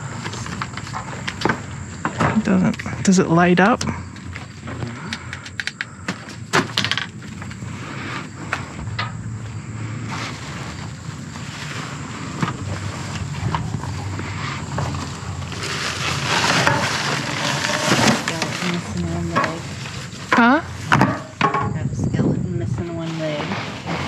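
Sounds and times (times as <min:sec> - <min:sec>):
steady rushing noise: 0:05.9 - 0:20.9
items rummaged in a dumpster: 0:06.0 - 0:24.0.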